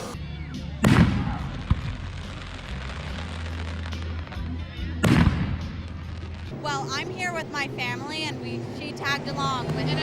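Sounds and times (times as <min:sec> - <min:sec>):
fireworks bangs: 0:00.8 - 0:06.6.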